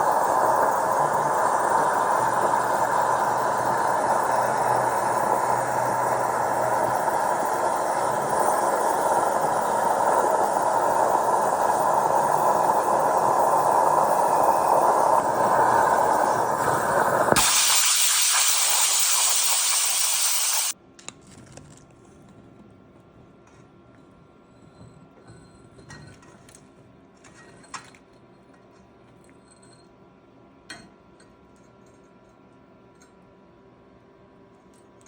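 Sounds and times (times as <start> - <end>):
plasma cutter torch hissing: 0.0 - 20.8.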